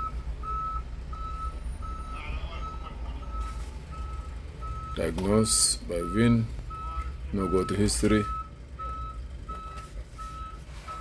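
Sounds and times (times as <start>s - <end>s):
electronic warning beeps: 0.0s - 11.0s.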